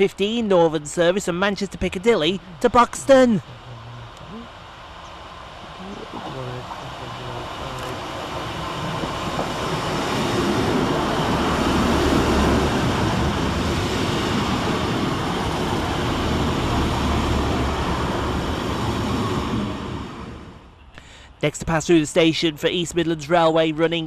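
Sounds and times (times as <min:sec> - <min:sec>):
diesel train engines rumbling: 0:00.0 - 0:24.0
train wheels on rail: 0:06.4 - 0:20.6.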